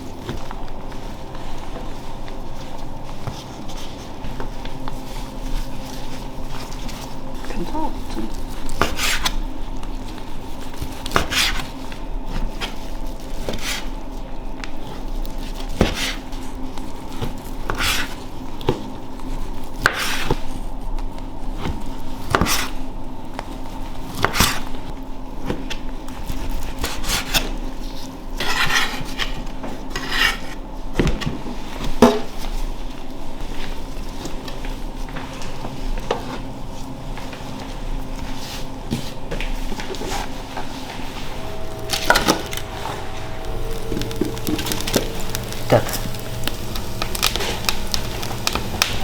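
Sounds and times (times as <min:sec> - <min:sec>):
steady low hum: 0:34.7 - 0:49.0.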